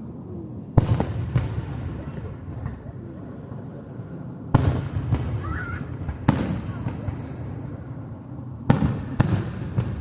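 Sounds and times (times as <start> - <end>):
fireworks bursting with booms: 0.8 - 2.9, 4.5 - 8.0, 8.6 - 10.0.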